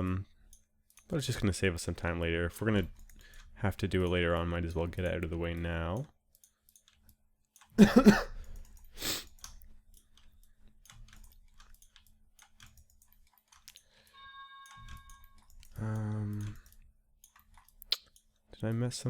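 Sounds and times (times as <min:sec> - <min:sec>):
computer mouse clicks: 0:08.4 - 0:18.9.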